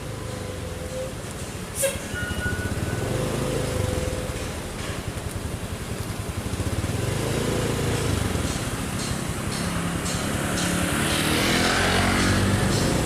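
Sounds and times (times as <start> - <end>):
road and wind noise: 0.0 - 13.0
vehicle engine accelerating: 2.6 - 4.6, 5.2 - 13.0.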